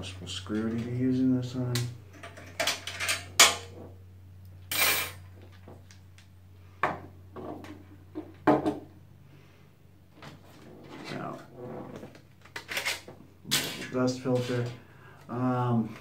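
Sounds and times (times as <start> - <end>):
steady low hum: 0.0 - 16.0
metal clicks and clatter: 2.1 - 3.6.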